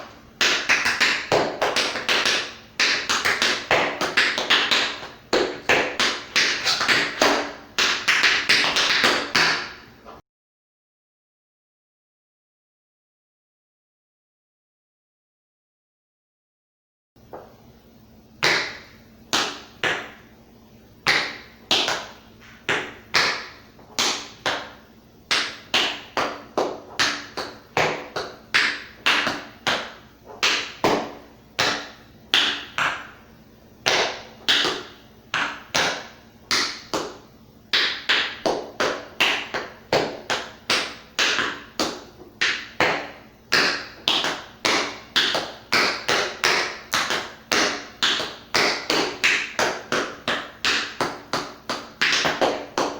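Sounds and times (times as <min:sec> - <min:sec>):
tap shoes clicking on hard floor: 0:00.4 - 0:10.2, 0:21.1 - 0:33.1, 0:33.8 - 0:52.9.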